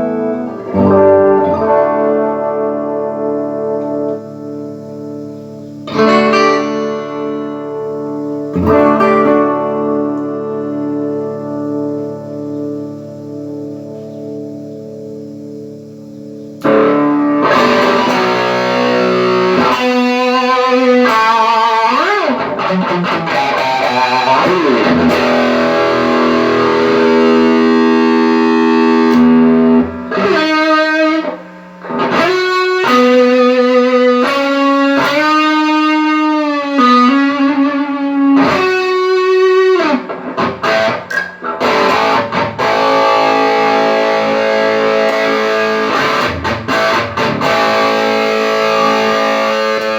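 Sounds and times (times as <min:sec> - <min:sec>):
distorted electric guitar lead: 0:00.0 - 0:49.9.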